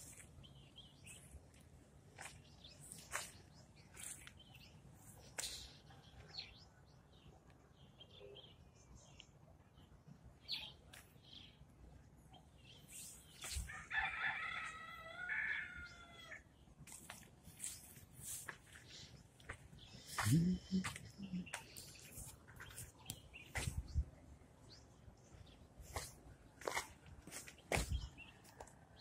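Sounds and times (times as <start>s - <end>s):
rooster crowing: 13.7s - 16.4s.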